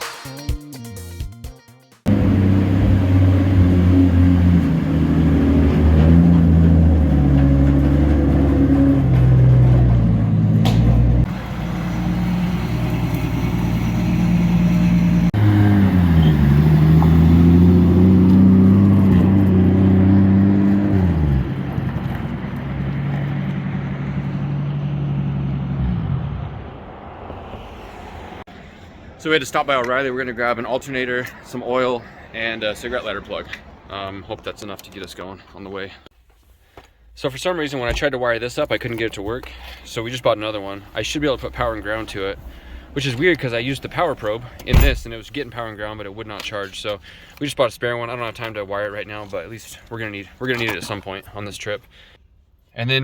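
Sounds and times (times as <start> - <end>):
car engine revving: 2.1 - 28.4.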